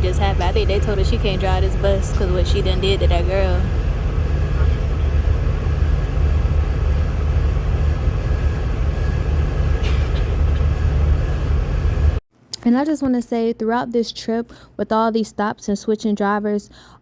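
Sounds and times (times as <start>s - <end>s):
coach diesel engine rumble: 0.0s - 12.2s.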